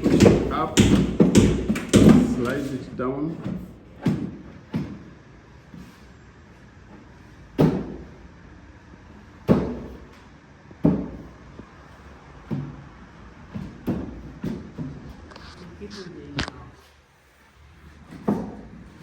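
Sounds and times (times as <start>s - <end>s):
wooden cabinet knocking: 0.0s - 2.7s.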